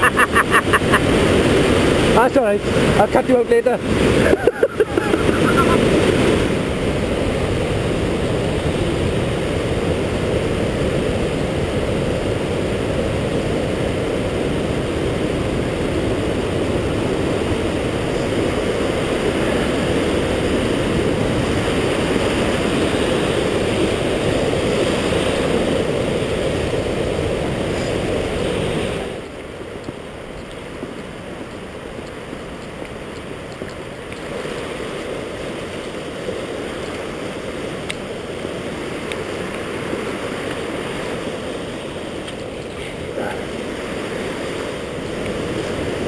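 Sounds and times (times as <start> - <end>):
waterfall rushing: 0.0 - 7.9.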